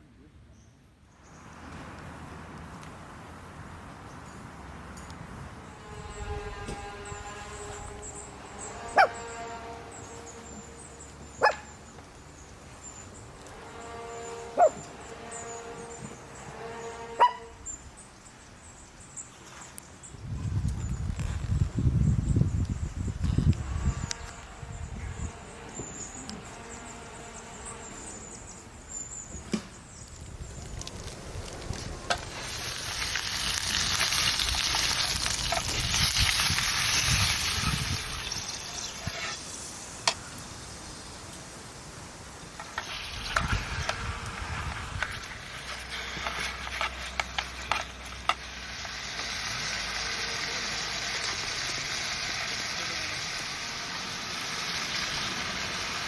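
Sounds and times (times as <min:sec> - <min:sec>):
food sizzling in a hot pan: 0:32.1 - 0:41.0, 0:45.2 - 0:56.0.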